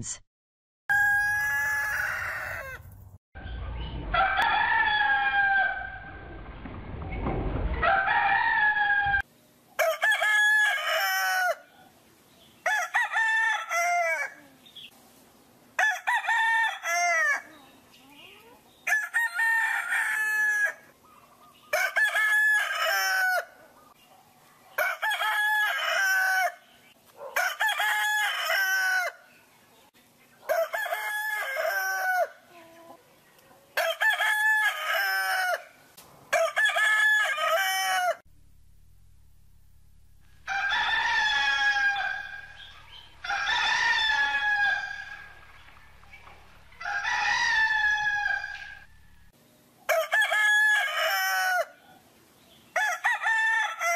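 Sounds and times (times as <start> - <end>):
rooster crowing: 0.9 - 2.9, 4.1 - 6.2, 7.8 - 11.8, 12.6 - 14.4, 15.8 - 17.5, 18.9 - 20.9, 21.7 - 23.6, 24.8 - 26.6, 27.3 - 29.2, 30.5 - 32.5, 33.8 - 38.2, 40.1 - 49.3, 49.9 - 51.8, 52.8 - 53.9
low hum: 38.3 - 49.3.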